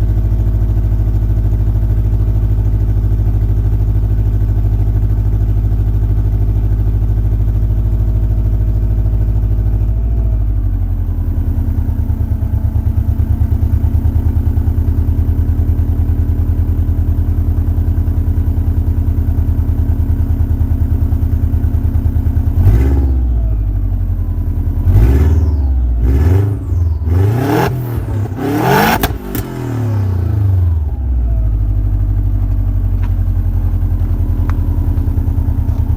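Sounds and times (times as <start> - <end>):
car engine idling: 0.0 - 35.9
engine revving: 22.6 - 23.4, 24.8 - 31.0.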